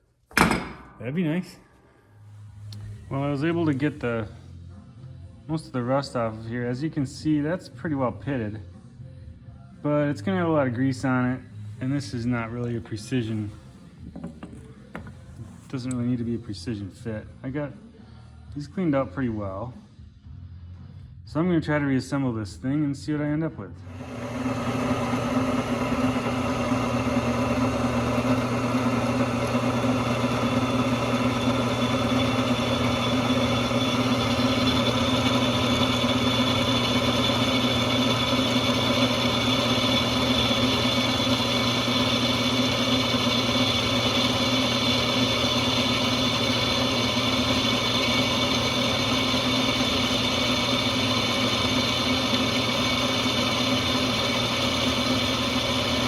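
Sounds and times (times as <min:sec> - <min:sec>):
drill press motor running: 0:23.9 - 0:56.0.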